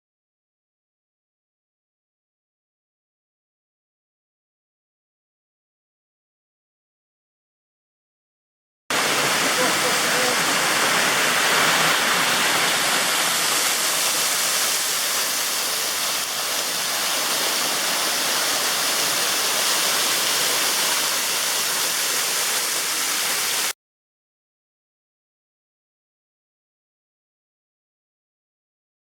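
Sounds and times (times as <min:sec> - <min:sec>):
waterfall roaring: 0:08.9 - 0:23.7.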